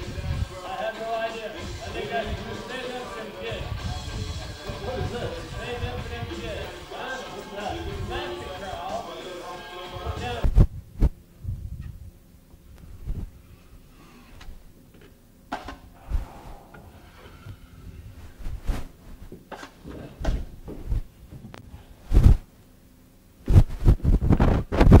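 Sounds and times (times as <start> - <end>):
irregular knocks and thumps: 19.3 - 22.4.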